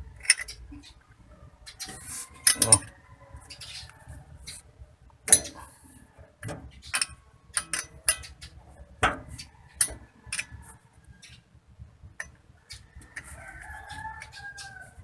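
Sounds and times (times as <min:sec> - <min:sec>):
metal tools clinking on metal: 0:02.4 - 0:02.9.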